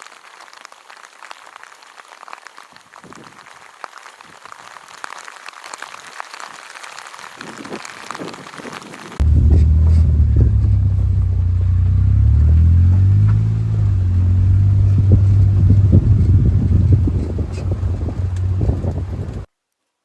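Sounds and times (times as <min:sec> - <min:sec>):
knocks and rattles: 0:09.2 - 0:19.5
vehicle engine running: 0:09.2 - 0:19.5.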